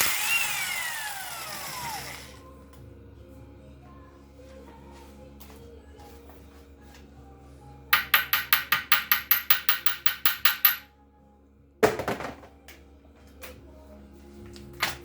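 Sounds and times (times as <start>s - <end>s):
impact wrench hammering: 8.0s - 10.8s.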